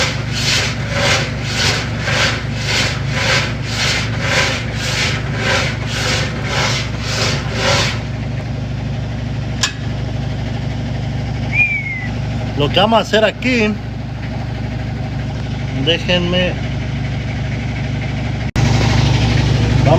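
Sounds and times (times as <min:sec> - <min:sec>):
washing machine rhythmic scraping: 0:00.0 - 0:08.4
low motor hum: 0:00.0 - 0:19.9.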